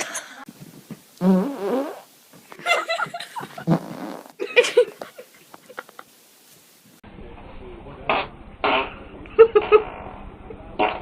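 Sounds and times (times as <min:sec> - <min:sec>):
person farting: 0:01.2 - 0:02.1, 0:03.6 - 0:04.4, 0:08.1 - 0:10.2, 0:10.8 - 0:11.0.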